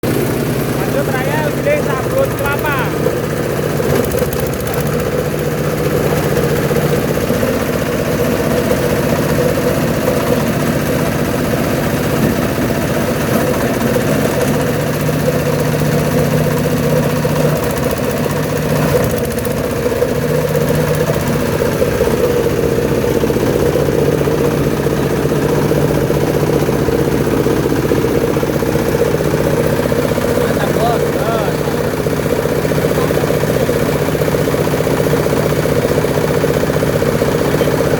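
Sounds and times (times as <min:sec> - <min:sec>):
grinding machine droning: 0:00.0 - 0:37.9.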